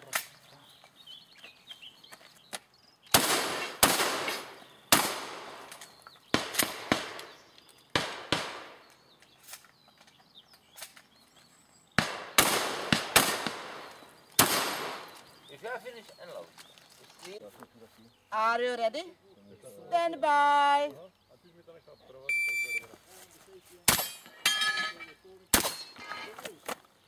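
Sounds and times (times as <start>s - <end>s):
shotgun shots: 3.1s - 7.3s, 7.9s - 8.8s, 12.0s - 15.2s, 25.5s - 25.8s.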